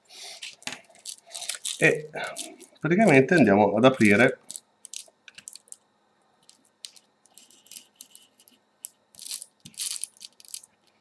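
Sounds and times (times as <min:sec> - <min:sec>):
knife scraping on velcro: 0:00.2 - 0:02.7.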